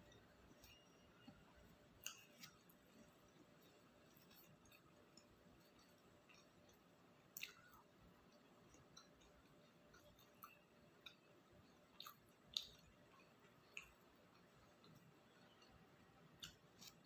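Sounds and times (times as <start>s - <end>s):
quiet chewing: 0.0s - 17.0s.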